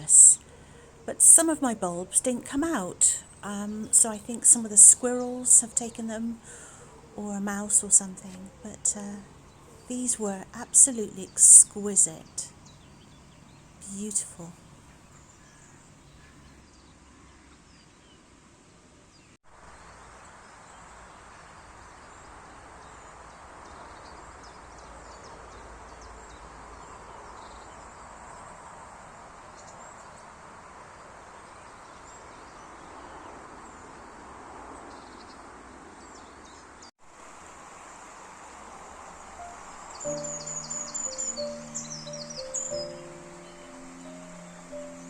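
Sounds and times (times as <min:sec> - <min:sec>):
faint bird chirps: 0:00.0 - 0:16.6, 0:38.7 - 0:45.0
steady background hiss: 0:00.0 - 0:16.6, 0:37.0 - 0:45.0.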